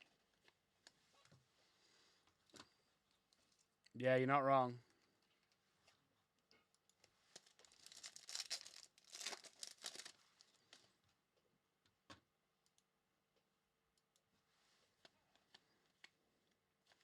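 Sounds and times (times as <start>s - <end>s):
wrapper being ripped open: 7.4s - 10.2s.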